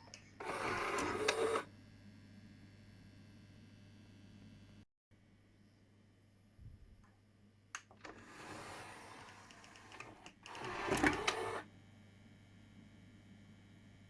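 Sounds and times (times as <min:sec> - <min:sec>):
small mechanism whirring and rattling: 0:00.4 - 0:01.7, 0:08.0 - 0:11.6.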